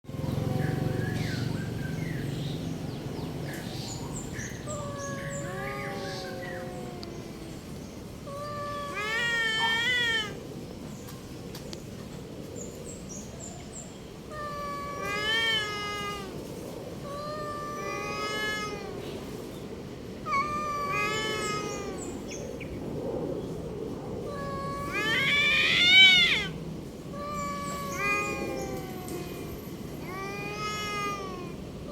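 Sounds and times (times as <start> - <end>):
birds chirping: 0.1 - 16.1, 17.8 - 23.6, 27.2 - 29.1
cat yowling: 4.6 - 7.6, 8.2 - 10.4, 14.3 - 16.4, 17.0 - 19.1, 20.2 - 22.3, 24.2 - 31.9.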